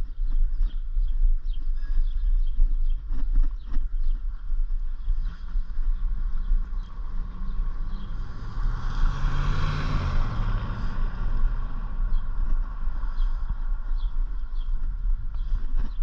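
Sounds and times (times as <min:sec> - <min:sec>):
steady low rumble: 0:00.0 - 0:16.0
vehicle passing: 0:05.3 - 0:15.1.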